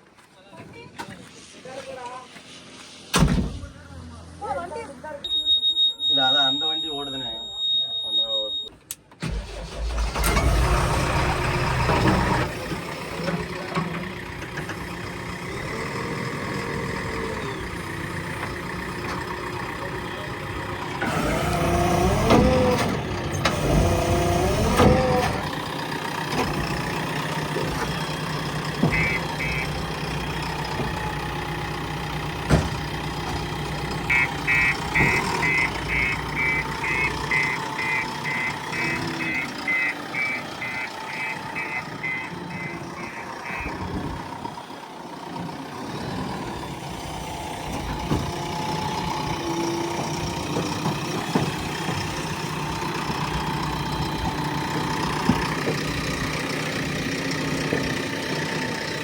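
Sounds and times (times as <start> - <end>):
heavy vehicle diesel engine: 0.0 - 59.0
reversing alarm beeping: 5.2 - 8.8, 28.9 - 29.9, 34.1 - 43.7.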